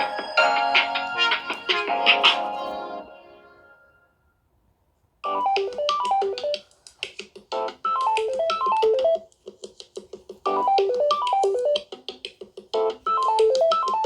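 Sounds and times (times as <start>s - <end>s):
phone ringtone melody: 0.0s - 4.0s, 5.2s - 6.7s, 7.6s - 9.2s, 10.5s - 11.9s, 12.8s - 14.0s.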